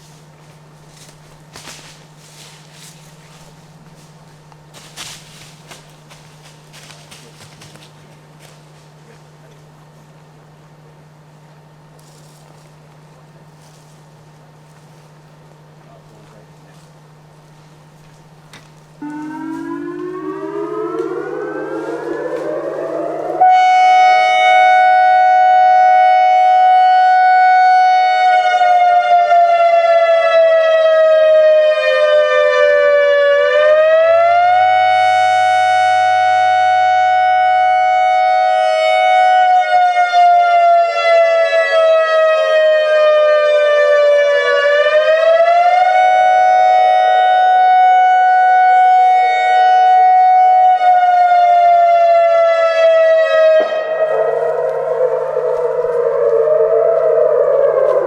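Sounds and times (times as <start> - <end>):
wavering warning siren: 19.0 - 58.0.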